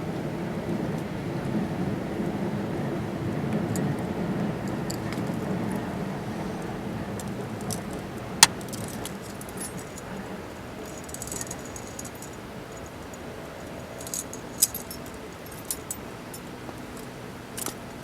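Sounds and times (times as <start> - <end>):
light metallic clinks: 3.6 - 18.0.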